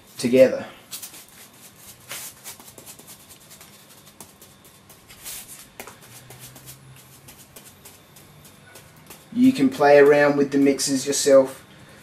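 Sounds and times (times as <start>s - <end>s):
paintbrush scratching and tapping: 1.0s - 9.4s.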